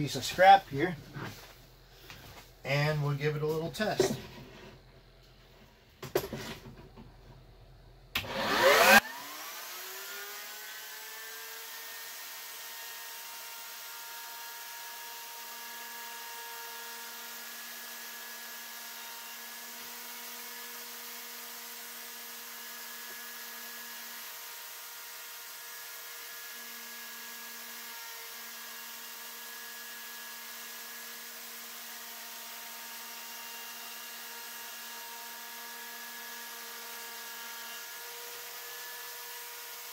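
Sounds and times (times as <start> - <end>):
router switching on: 8.1 - 10.2
router motor whine: 8.1 - 39.9.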